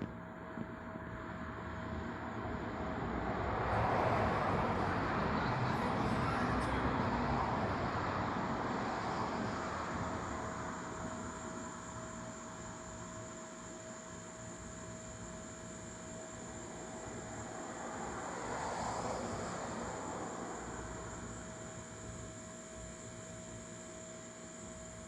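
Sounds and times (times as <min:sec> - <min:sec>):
faint steady tone: 0:00.0 - 0:25.0
car passing by: 0:02.7 - 0:11.0, 0:16.9 - 0:21.3.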